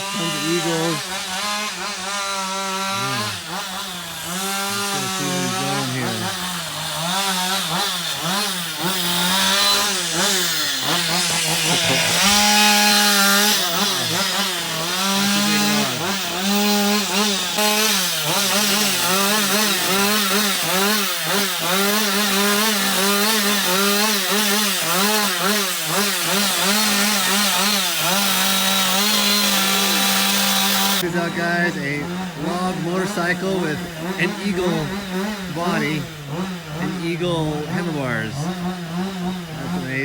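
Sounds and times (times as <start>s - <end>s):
chainsaw revving into log: 0.0s - 40.0s.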